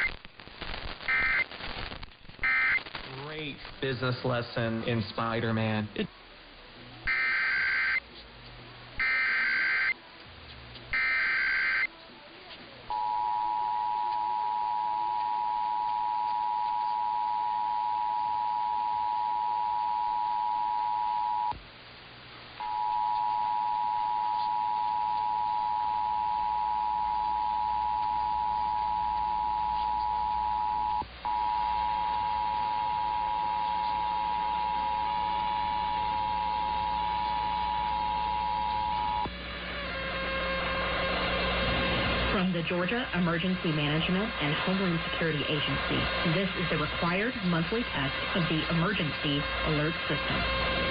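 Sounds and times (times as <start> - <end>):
low hum: 12.9 - 50.9.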